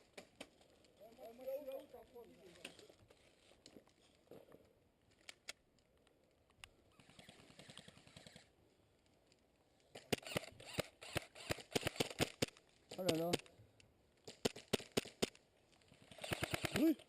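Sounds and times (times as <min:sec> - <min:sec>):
sharp clicks: 0:09.9 - 0:15.4, 0:16.2 - 0:16.9.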